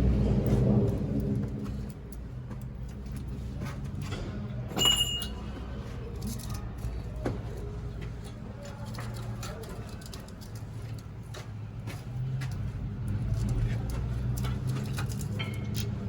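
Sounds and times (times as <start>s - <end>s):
sharp metallic clink: 4.8s - 5.4s.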